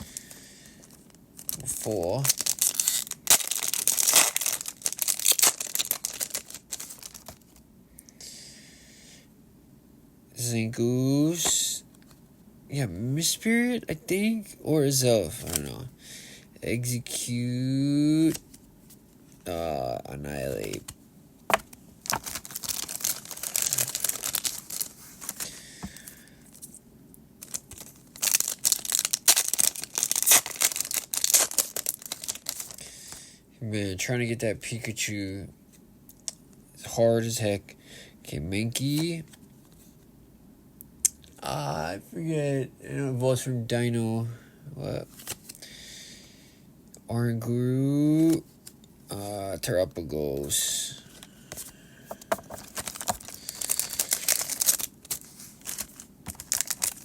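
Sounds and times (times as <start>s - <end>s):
foil wrapper crinkling and tearing: 0.1s - 7.6s, 21.5s - 26.7s, 27.4s - 32.8s, 51.2s - 57.0s.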